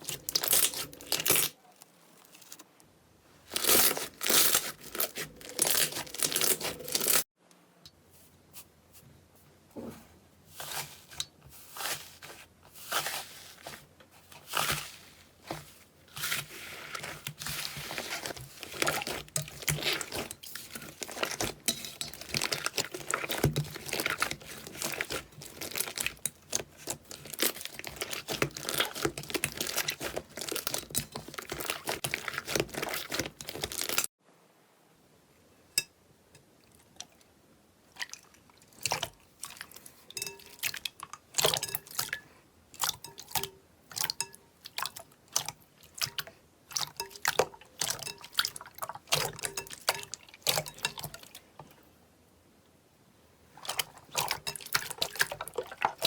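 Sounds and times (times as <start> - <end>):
slime crackling and popping: 0.0 - 1.5.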